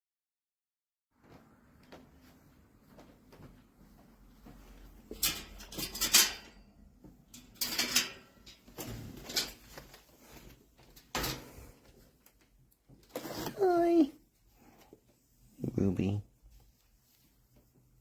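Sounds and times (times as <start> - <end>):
metal dog crate rattling: 5.0 - 6.7, 7.3 - 10.0.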